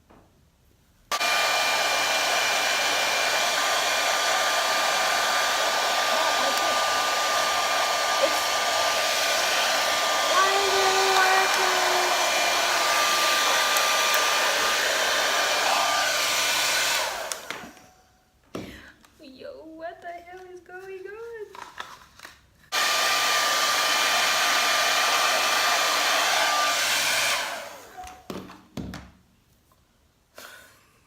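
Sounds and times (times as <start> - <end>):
hair dryer blowing: 1.1 - 17.9, 22.7 - 28.2.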